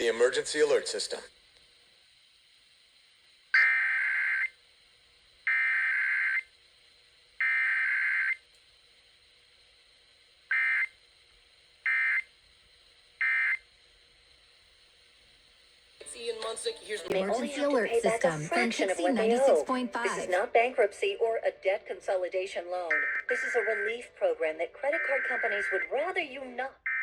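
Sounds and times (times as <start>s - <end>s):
raspy two-tone digital data bursts: 3.5s - 4.6s, 5.4s - 6.6s, 7.4s - 8.4s, 10.5s - 11.0s, 11.8s - 12.4s, 13.2s - 13.7s, 22.9s - 24.0s, 24.8s - 27.0s.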